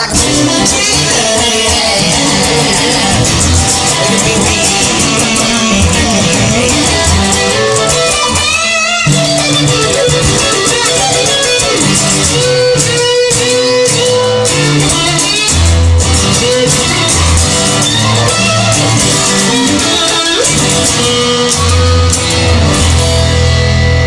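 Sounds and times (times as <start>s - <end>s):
guitar music: 0.0s - 24.0s
low bass line: 2.2s - 7.9s, 21.9s - 24.0s.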